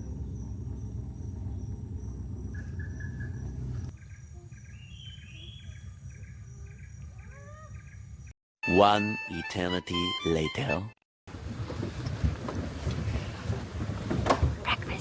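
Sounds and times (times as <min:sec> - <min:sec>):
low rumble: 0:00.0 - 0:03.9.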